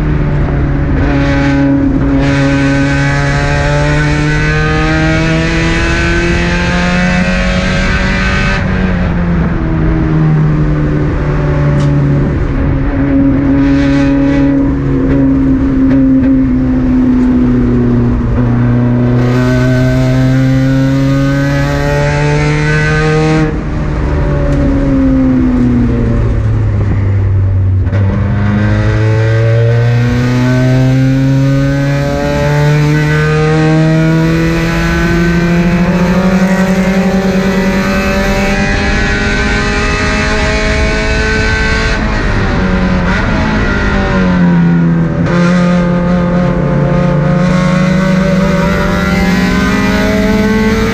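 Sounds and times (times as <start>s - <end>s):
race car engine revving: 0.0s - 50.9s.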